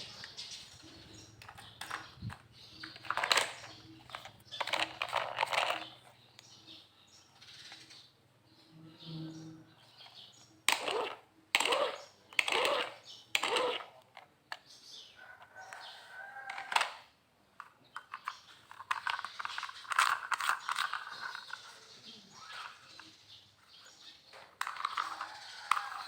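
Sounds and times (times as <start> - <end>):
plastic toy vehicles rattling: 0.0 - 6.5, 10.0 - 15.0, 16.4 - 26.0.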